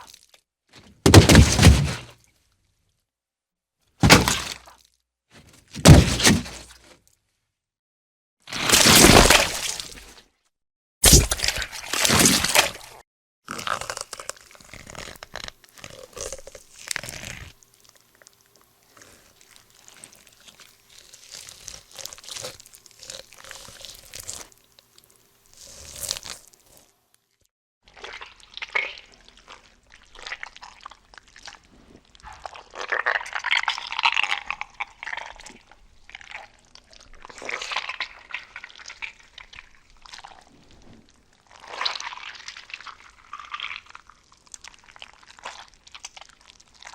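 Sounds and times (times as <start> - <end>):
crunching: 0.8 - 2.2, 4.0 - 4.8, 5.4 - 6.9, 8.6 - 10.1, 11.0 - 24.5
wet liquid splatter: 4.0 - 4.8, 8.5 - 10.2, 27.9 - 46.9.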